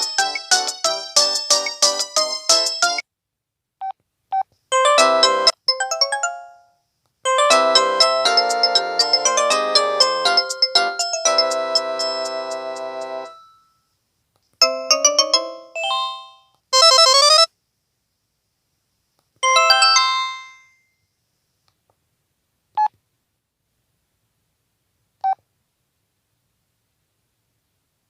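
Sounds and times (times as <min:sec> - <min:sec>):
phone alert tones: 0:14.6 - 0:17.5.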